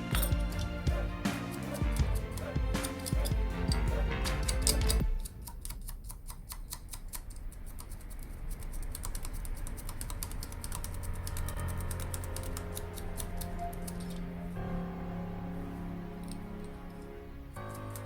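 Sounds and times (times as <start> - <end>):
faint background music: 0.0 - 6.1, 9.8 - 18.0.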